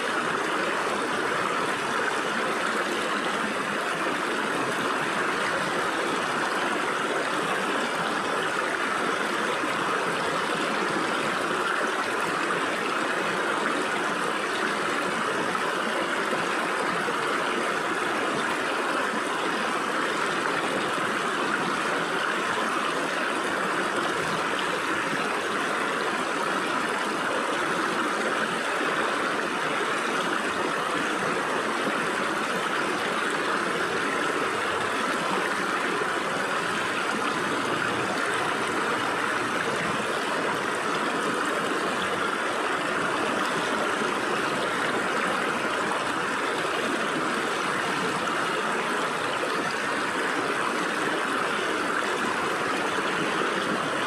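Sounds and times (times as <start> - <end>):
stream water rushing over rocks: 0.0 - 54.0.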